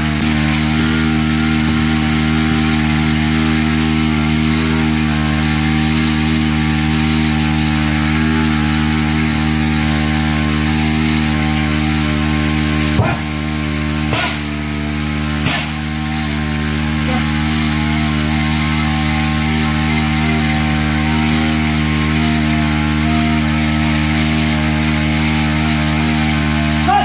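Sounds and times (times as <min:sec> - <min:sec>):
small sprayer engine running: 0:00.0 - 0:27.0
sharp knocks: 0:12.9 - 0:13.3, 0:14.1 - 0:14.5, 0:15.4 - 0:15.8.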